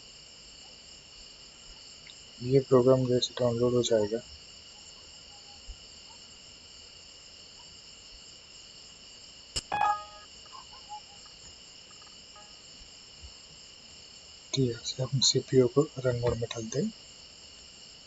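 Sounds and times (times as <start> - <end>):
sharp click: 9.6 - 10.2
brief tone: 9.7 - 10.3.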